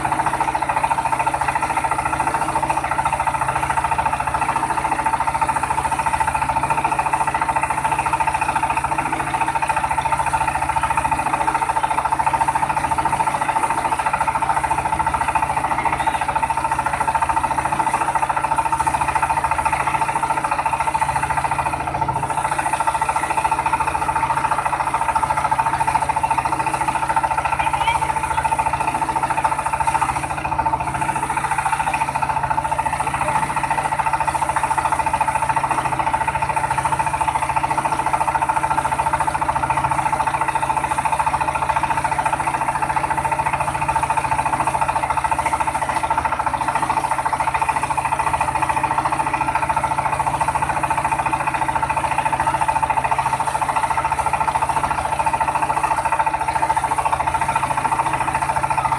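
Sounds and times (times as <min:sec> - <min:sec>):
rice-milling machine running: 0:00.0 - 0:58.9.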